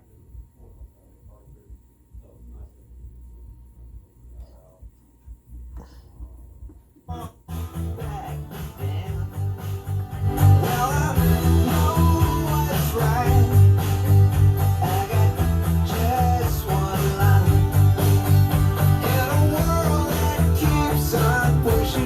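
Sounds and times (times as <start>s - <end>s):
rock music with singing: 7.1s - 22.0s.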